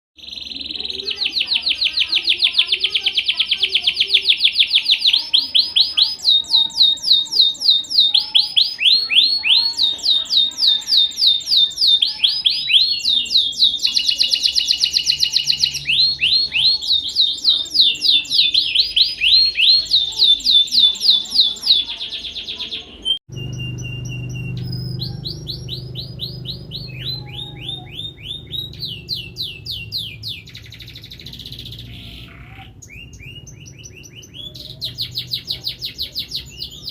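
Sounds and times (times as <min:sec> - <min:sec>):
canary singing trills: 0:00.2 - 0:36.9
low hum: 0:23.3 - 0:32.0.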